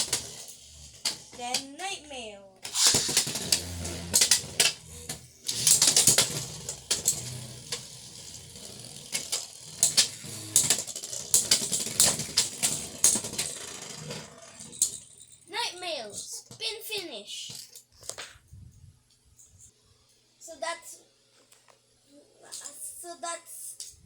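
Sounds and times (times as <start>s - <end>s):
spinning top launch: 0.0s - 1.6s, 2.6s - 15.4s
spinning top clattering: 0.0s - 2.0s, 2.6s - 16.5s.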